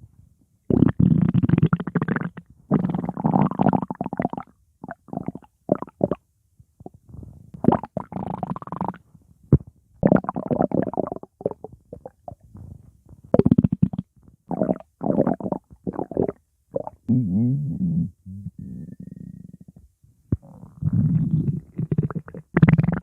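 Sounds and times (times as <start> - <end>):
stomach growling: 6.8 - 23.0.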